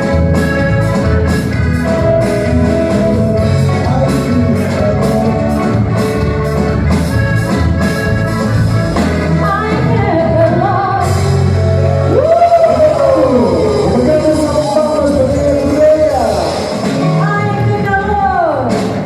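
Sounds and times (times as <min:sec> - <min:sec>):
band music with heavy bass: 0:00.0 - 0:19.0
person singing: 0:02.8 - 0:06.3, 0:09.4 - 0:19.0.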